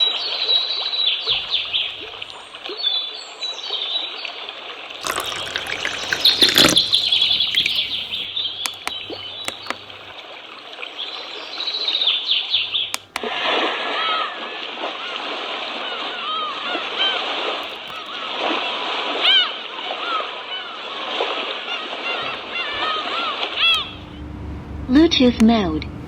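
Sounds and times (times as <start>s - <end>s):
sharp clicks: 7.2s - 9.9s, 12.8s - 13.4s.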